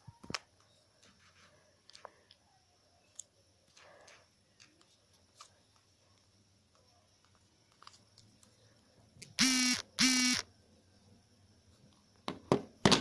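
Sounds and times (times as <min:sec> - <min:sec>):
alarm buzzing beeps: 0:09.4 - 0:10.4.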